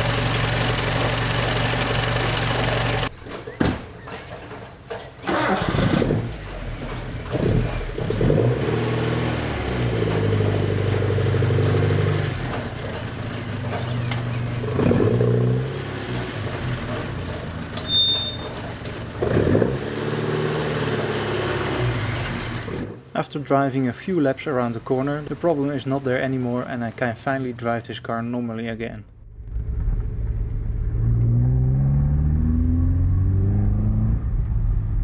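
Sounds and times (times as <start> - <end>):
car engine revving and idling: 0.0 - 3.1, 5.4 - 23.1, 29.2 - 35.0.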